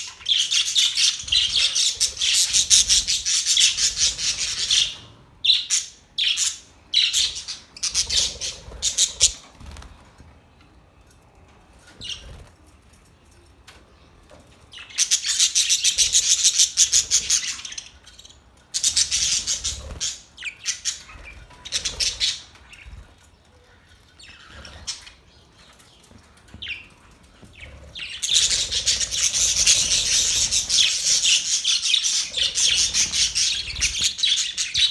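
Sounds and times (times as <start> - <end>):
budgerigars chirping: 0.0 - 9.5, 18.8 - 22.9, 27.6 - 34.9.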